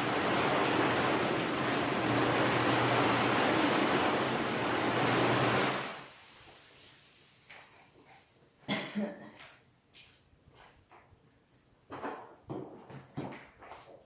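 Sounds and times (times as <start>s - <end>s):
water running into bathtub: 0.0s - 6.9s.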